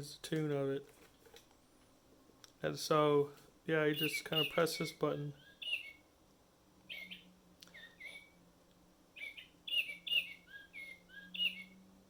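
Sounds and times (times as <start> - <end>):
faint steady hum: 0.0 - 12.0
recorded bird song from speaker: 3.7 - 6.1, 6.8 - 8.4, 9.1 - 12.0.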